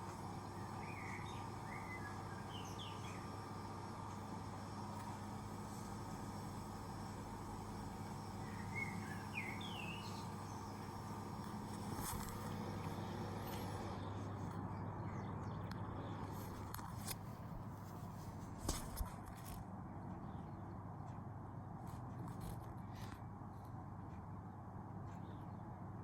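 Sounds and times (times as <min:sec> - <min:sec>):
small bird chirping: 0:00.0 - 0:03.4, 0:07.0 - 0:13.8
distant city traffic hum: 0:00.0 - 0:26.0.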